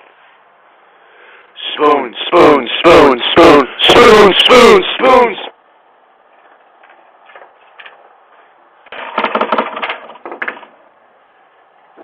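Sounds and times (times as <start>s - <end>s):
steady hiss: 0.0s - 8.8s
rapid clatter of knocks and clicks: 8.8s - 10.8s.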